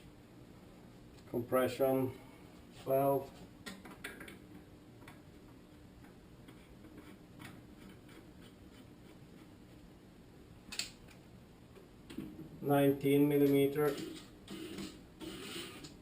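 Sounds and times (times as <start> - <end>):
faint clicks of metal parts: 13.3 - 15.0.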